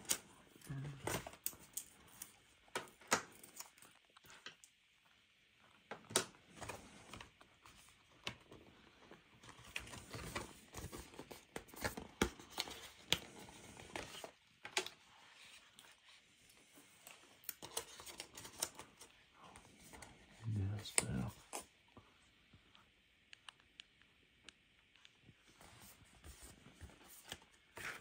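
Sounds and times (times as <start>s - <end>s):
packaging rustling and crinkling: 6.4s - 20.0s.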